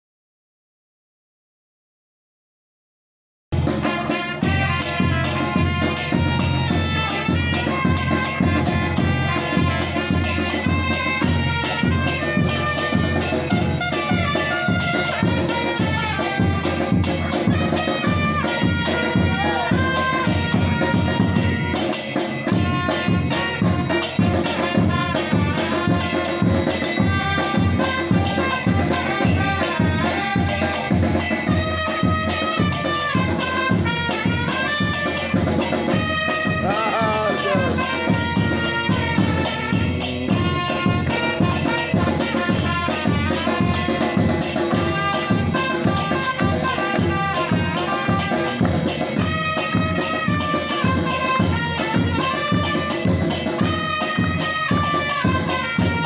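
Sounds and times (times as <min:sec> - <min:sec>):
samba percussion drum groove: 0:03.5 - 0:56.0.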